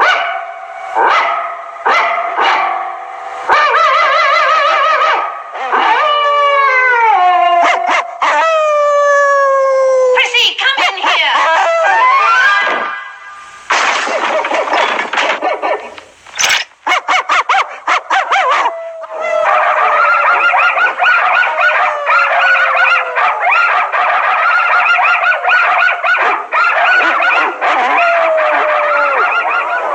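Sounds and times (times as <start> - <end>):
dogs barking: 0.0 - 6.1, 7.6 - 8.4, 10.6 - 13.1, 13.7 - 29.9
dog howling: 0.0 - 10.2, 11.0 - 13.0, 16.9 - 29.9.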